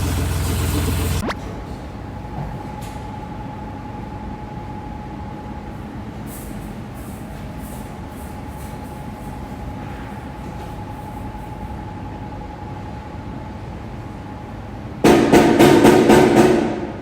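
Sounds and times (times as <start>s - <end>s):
machinery humming: 0.0s - 1.4s.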